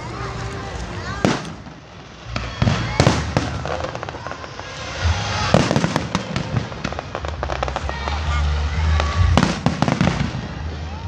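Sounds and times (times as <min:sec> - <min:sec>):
fireworks crackling bursts: 0:00.0 - 0:11.0
fireworks bangs: 0:00.1 - 0:11.0
low music soundtrack: 0:04.7 - 0:10.6.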